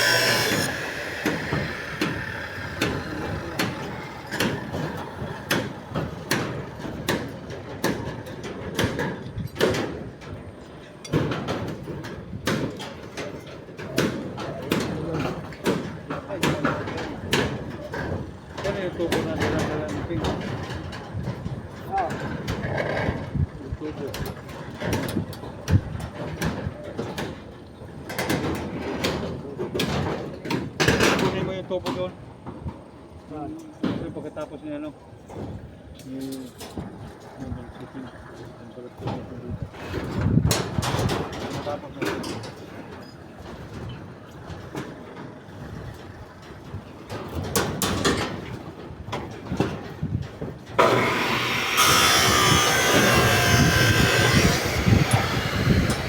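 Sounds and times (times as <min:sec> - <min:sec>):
loud hissing machine: 0:00.0 - 0:06.3, 0:50.8 - 0:56.0
construction knocks and clanks: 0:00.0 - 0:56.0.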